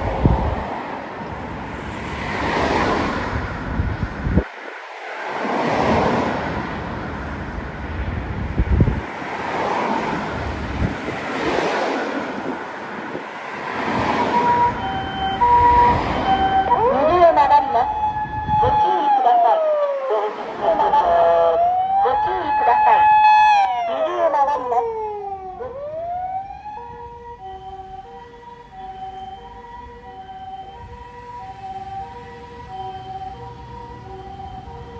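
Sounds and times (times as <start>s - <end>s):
road traffic passing: 0.0s - 34.9s
ambulance two-tone siren: 13.1s - 34.9s.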